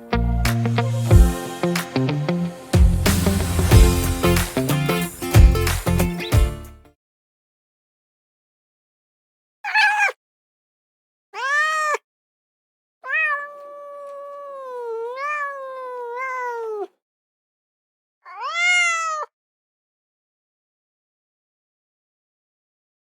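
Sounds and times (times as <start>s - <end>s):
cat meowing: 9.6s - 10.2s, 11.4s - 12.0s, 13.0s - 17.0s, 18.2s - 19.4s.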